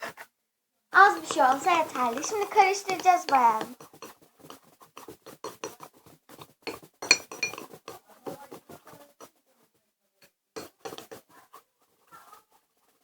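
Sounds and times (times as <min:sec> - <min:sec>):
spoon scraping slime in a bowl: 0:01.0 - 0:09.3, 0:10.6 - 0:11.3.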